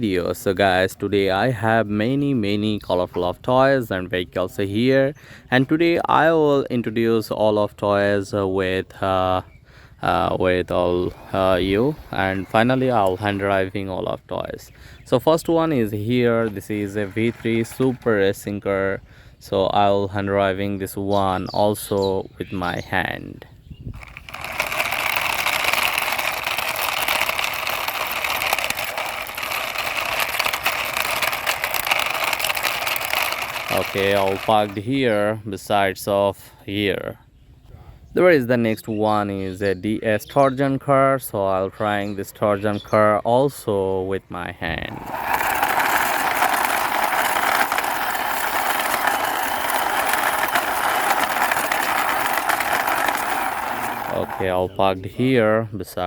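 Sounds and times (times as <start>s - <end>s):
toy car wheels rolling: 10.0s - 18.9s, 23.9s - 35.2s, 44.6s - 55.3s.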